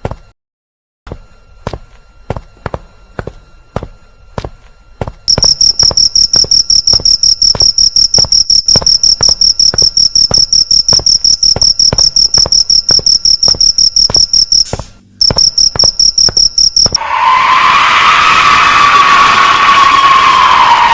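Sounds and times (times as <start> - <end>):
crickets chirping trill: 1.1 - 17.0.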